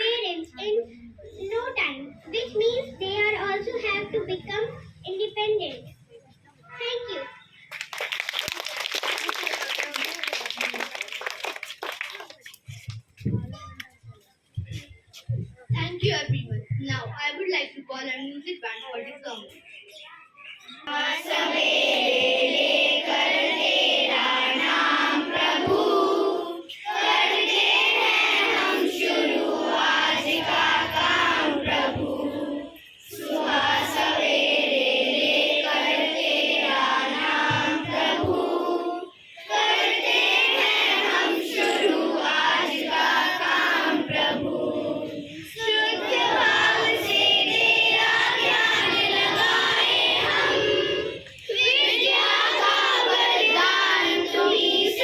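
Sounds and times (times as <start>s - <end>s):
children singing: 20.8s - 55.0s.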